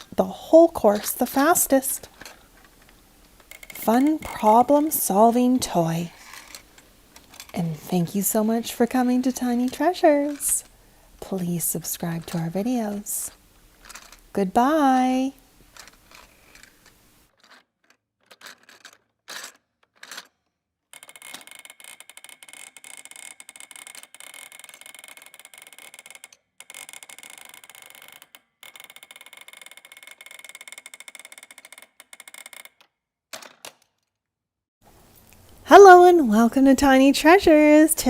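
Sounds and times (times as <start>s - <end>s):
mechanical clicking and rattling: 0.9s - 10.7s.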